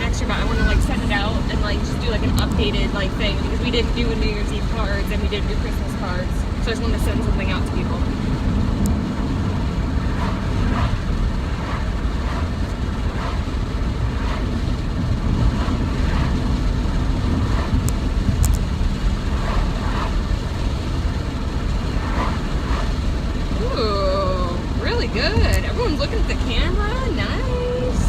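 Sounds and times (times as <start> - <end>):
wind: 0.0 - 28.0
ocean surf: 9.9 - 20.3, 21.1 - 24.7.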